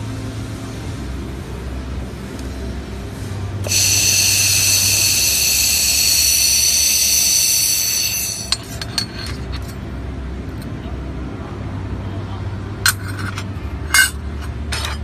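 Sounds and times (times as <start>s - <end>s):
low machine hum: 0.0s - 15.0s
laser welder hissing whine: 3.6s - 8.8s.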